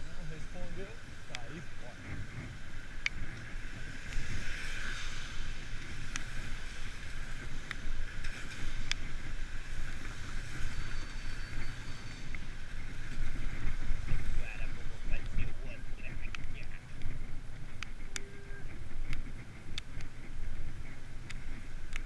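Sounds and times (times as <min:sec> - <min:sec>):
wind rumbling on microphone: 0:00.0 - 0:22.0
hiss of wet road: 0:03.6 - 0:07.6.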